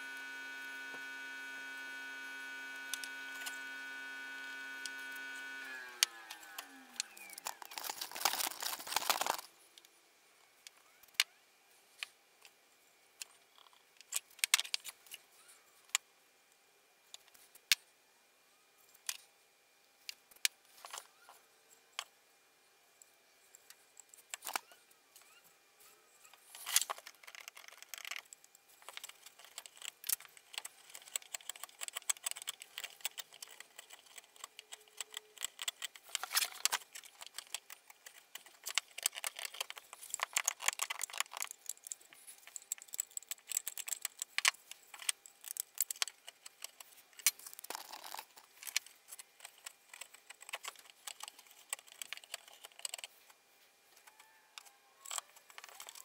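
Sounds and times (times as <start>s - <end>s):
small hard objects clicking: 6.0s - 9.5s, 26.6s - 53.2s.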